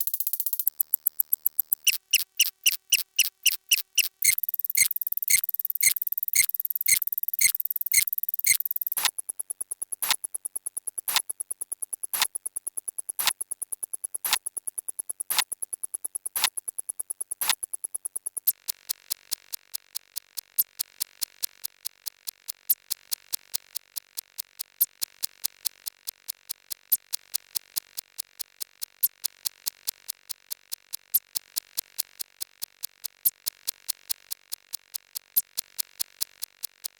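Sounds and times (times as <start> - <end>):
sharp clicks: 0.2 - 9.1
rapid fine ticking: 0.4 - 9.1.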